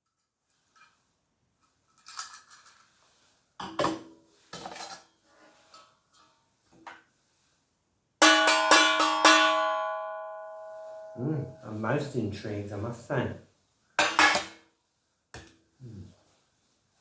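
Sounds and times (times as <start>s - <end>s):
small objects clattering: 1.8s - 3.2s.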